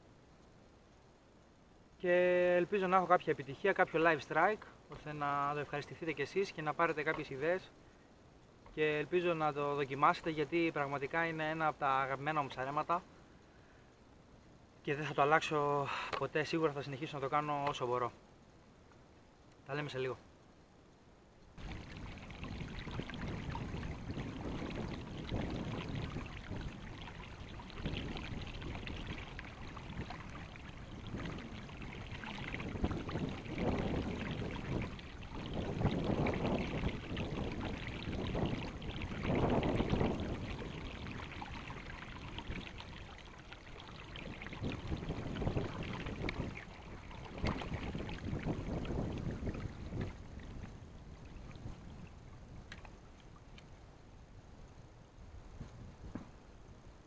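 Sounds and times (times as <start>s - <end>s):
river water sloshing: 21.5s - 53.8s.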